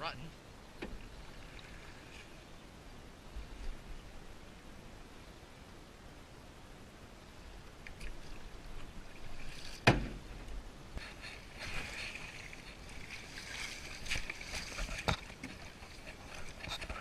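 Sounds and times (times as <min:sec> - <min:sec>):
water splashing and sloshing: 0:00.6 - 0:02.6, 0:07.6 - 0:17.0.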